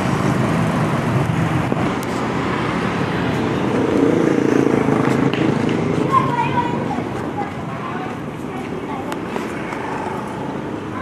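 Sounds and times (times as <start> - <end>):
road traffic: 0.0 - 11.0.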